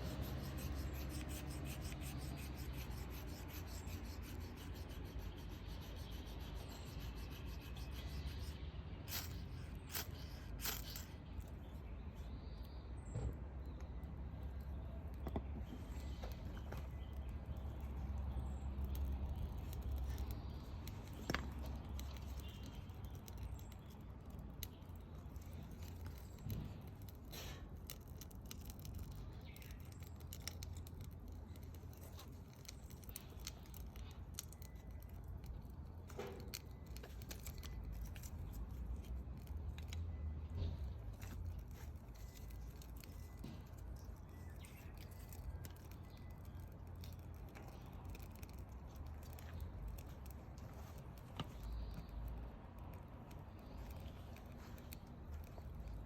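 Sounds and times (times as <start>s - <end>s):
low steady rumble: 0.0s - 24.0s
wood fire crackling and popping: 15.0s - 56.0s.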